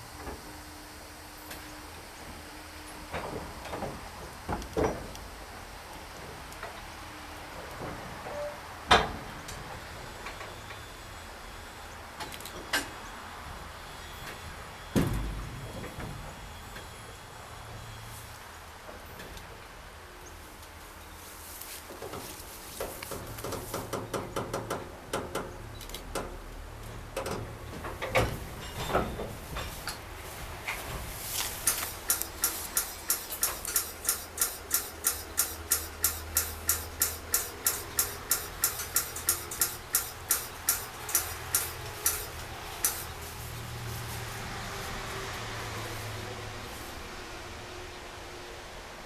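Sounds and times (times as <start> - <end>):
train rumbling: 0.0 - 49.0
train clicks and clanks: 1.4 - 10.9, 12.2 - 13.0, 21.6 - 44.0.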